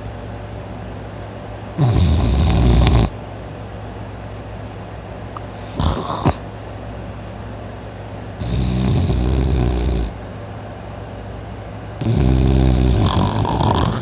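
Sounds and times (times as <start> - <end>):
person snoring: 1.8 - 3.1, 5.6 - 6.4, 8.4 - 10.2, 12.0 - 14.0.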